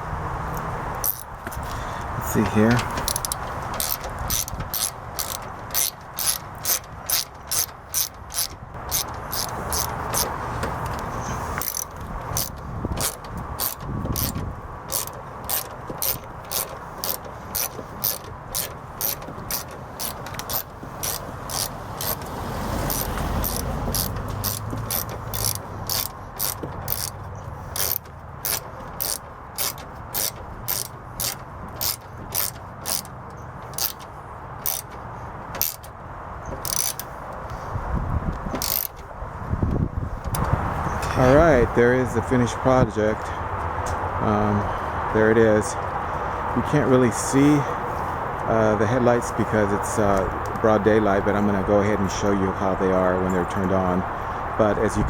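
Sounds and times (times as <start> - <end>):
ratchet wrench clicking: 0.5 - 11.0, 11.6 - 35.0, 35.6 - 36.0, 36.6 - 37.6, 38.6 - 39.0.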